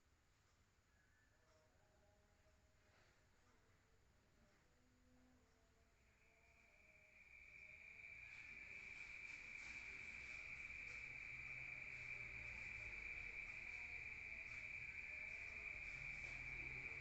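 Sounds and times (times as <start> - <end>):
crickets chirping: 5.9 - 17.0.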